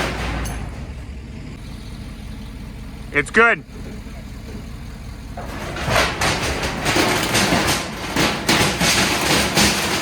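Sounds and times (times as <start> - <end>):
sheet metal clattering and scraping: 0.0 - 1.1, 5.3 - 10.0.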